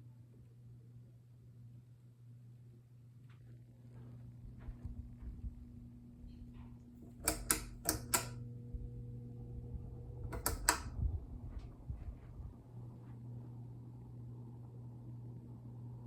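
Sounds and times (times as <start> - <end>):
ceiling fan motor humming: 0.0 - 16.0
pull-chain switch clicks: 7.0 - 8.4, 10.3 - 10.9.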